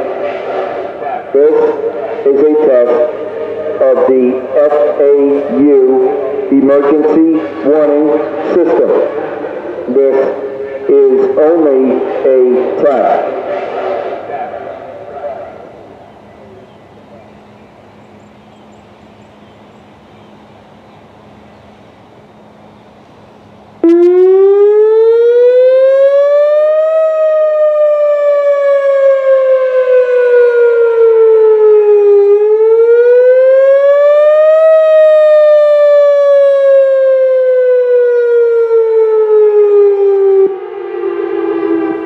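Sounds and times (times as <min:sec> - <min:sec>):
warning siren wailing: 0:00.0 - 0:18.1, 0:22.2 - 0:42.0.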